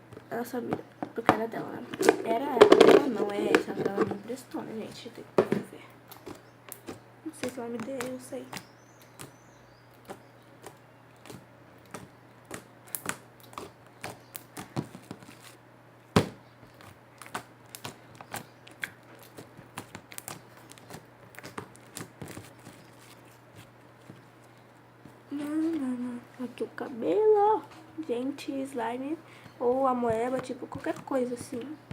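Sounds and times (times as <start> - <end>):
slime clicking and popping: 6.1 - 15.0, 16.2 - 22.8.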